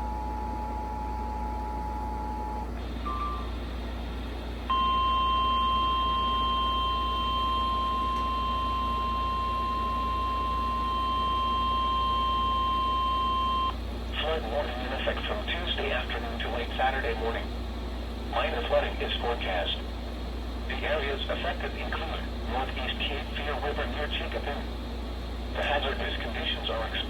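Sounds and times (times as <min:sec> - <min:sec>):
steady warning alarm tone: 0:00.0 - 0:17.5
two-tone attention signal: 0:04.7 - 0:13.7.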